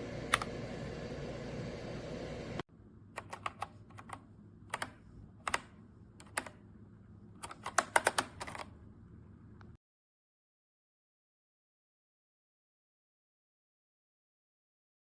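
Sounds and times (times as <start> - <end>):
mechanical keyboard clicks: 3.2 - 6.6, 7.4 - 8.7.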